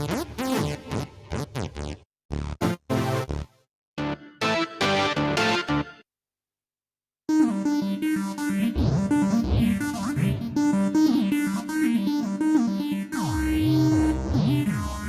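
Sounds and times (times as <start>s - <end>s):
synthesizer keyboard sustained notes: 4.0s - 6.0s, 7.3s - 15.0s
synthesizer sweeping pitch glides: 7.8s - 14.9s.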